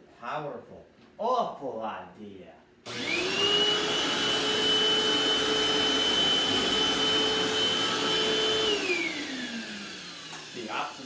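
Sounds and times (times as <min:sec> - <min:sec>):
vacuum cleaner motor whining: 0:02.9 - 0:11.0.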